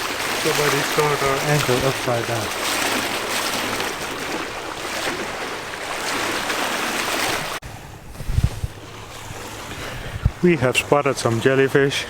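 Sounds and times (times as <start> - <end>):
water rushing along a hull: 0.0 - 12.0
wind thumps on microphone: 7.3 - 10.5.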